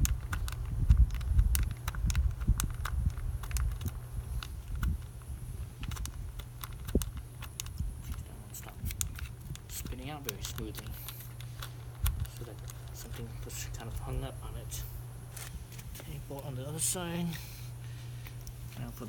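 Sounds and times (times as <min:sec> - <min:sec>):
socket wrench metallic clicks: 0:05.8 - 0:13.2.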